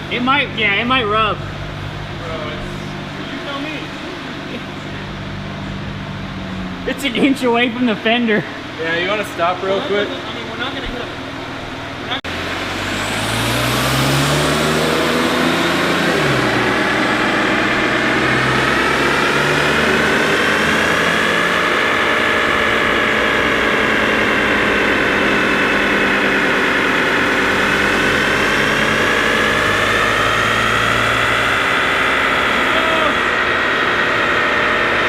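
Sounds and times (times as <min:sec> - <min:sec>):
car engine revving on a dyno: 0:00.0 - 0:35.0
high turbo whine: 0:00.0 - 0:35.0.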